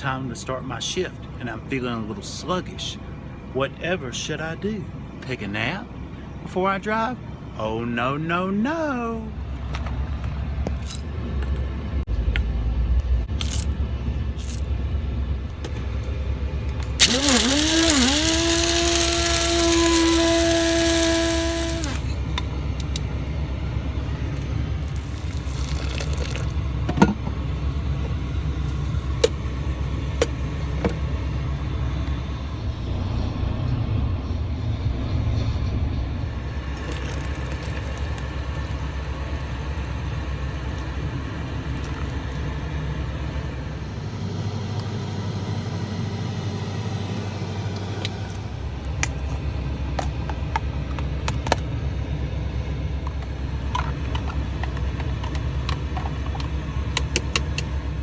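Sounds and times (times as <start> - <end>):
truck engine rumble inside cab: 0.0 - 58.0.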